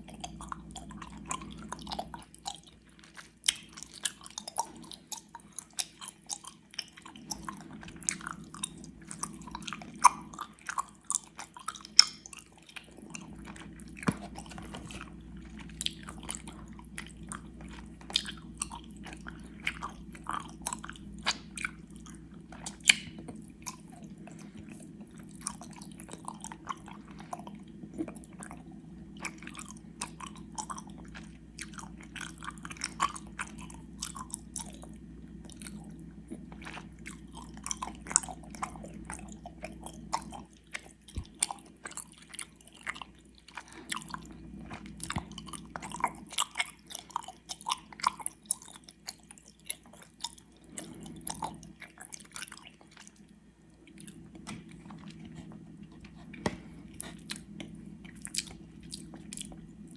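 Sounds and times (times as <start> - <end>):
chewing gummy candy: 0.0 - 59.9
faint steady hum: 0.0 - 59.9.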